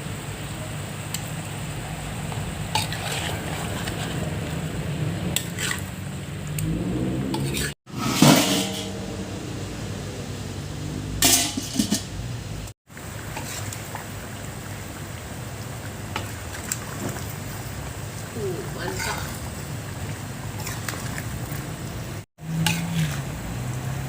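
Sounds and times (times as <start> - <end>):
metal utensils clinking on pot: 11.2 - 12.1, 22.6 - 23.2.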